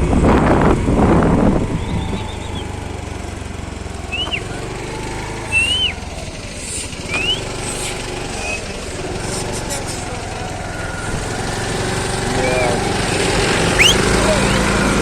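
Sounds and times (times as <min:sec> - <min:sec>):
low engine hum: 0:00.0 - 0:15.0
high bird chirps: 0:04.1 - 0:04.6, 0:05.5 - 0:06.0, 0:07.1 - 0:08.7, 0:13.1 - 0:14.7.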